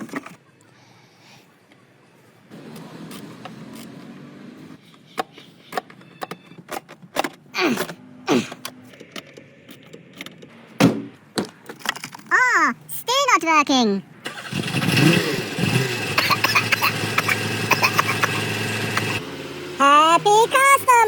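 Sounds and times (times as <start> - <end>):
diesel engine cranking: 2.5 - 11.2, 14.2 - 21.0.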